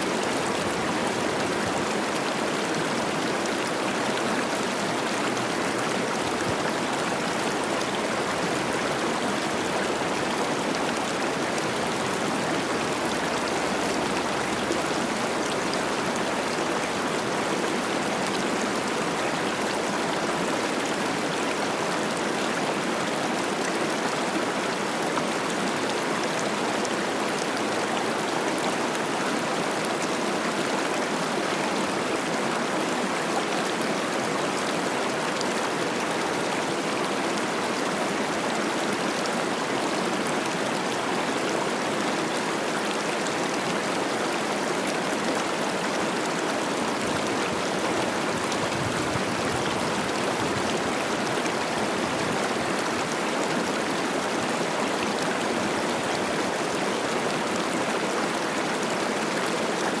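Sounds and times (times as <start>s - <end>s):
river water rushing: 0.0s - 60.0s.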